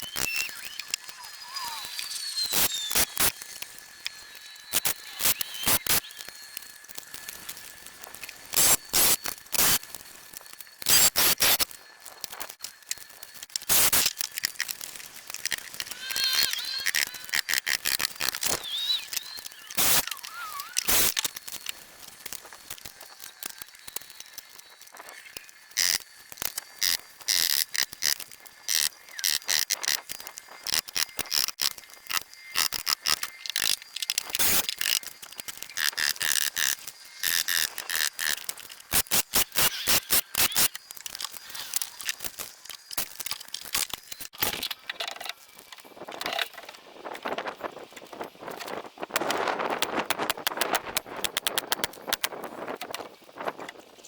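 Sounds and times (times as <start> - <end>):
bird chirps: 18.4 - 20.8.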